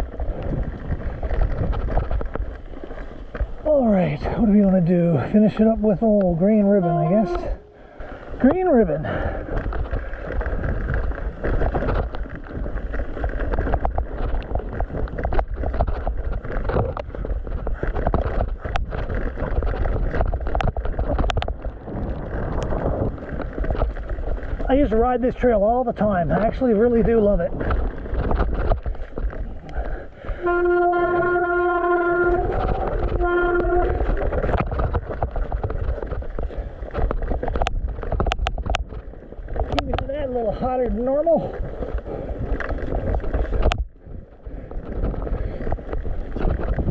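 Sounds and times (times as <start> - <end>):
bike knocks and rattles: 0.0 - 7.5, 8.3 - 46.9
tyre and wind rumble: 0.0 - 46.9
bike hub buzzing: 27.7 - 39.8.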